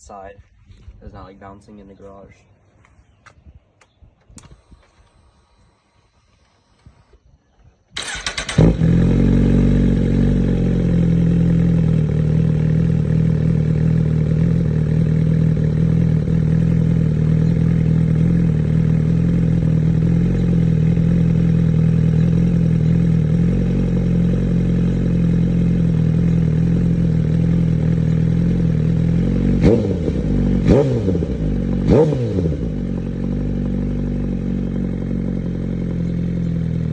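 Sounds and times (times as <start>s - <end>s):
motorcycle engine starting and idling: 3.2s - 7.3s, 7.9s - 36.9s
motorcycle engine revving: 8.0s - 36.9s.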